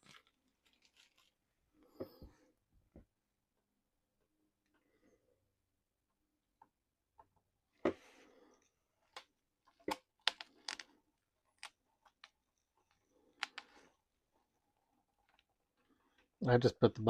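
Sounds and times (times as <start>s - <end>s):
small plastic parts clicking: 9.1s - 13.8s.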